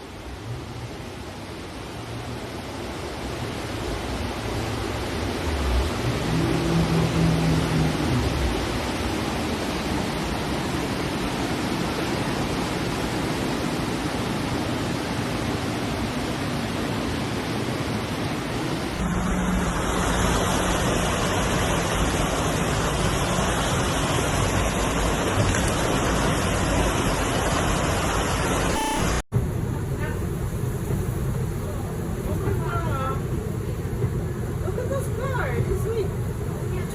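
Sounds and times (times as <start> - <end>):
floodwater rushing: 0.0 - 29.2.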